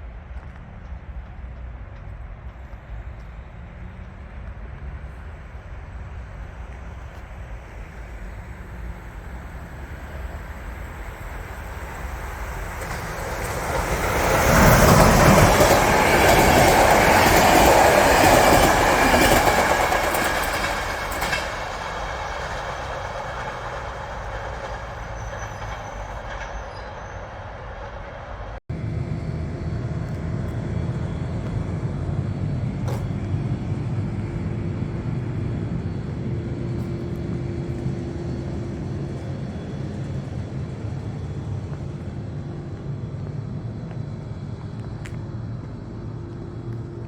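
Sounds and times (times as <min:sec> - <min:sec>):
passenger train rumbling past: 0:00.0 - 0:47.0
train wheels clattering: 0:06.1 - 0:28.2.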